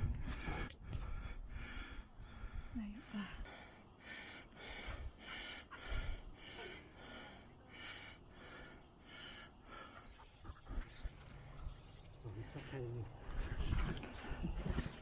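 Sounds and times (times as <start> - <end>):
person breathing hard: 0.0 - 11.2.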